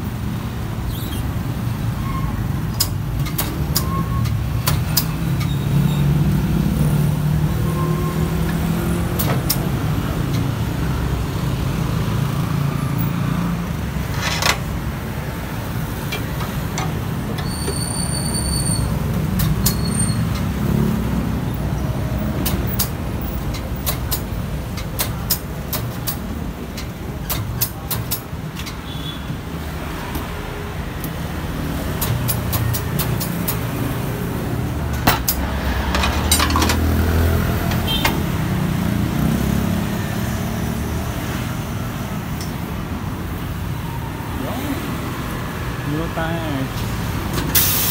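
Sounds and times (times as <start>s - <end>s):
road traffic rumble: 0.0s - 47.9s
sharp clicks and knocks: 2.6s - 5.6s, 22.3s - 28.9s, 31.8s - 34.0s, 34.8s - 38.4s.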